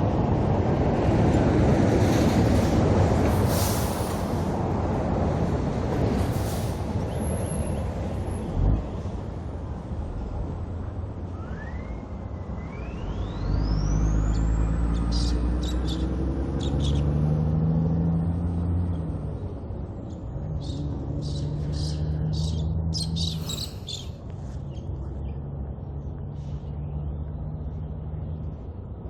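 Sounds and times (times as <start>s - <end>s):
diesel truck engine pulling away: 0.2s - 10.6s, 12.8s - 24.0s
birds chirping: 20.0s - 25.4s.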